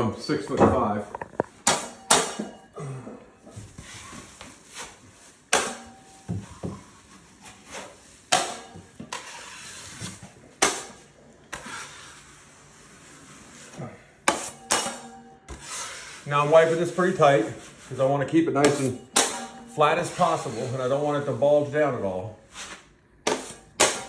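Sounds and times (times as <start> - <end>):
knife scraping joint compound: 7.4 - 12.4, 14.3 - 18.0, 18.6 - 21.0, 22.5 - 24.0.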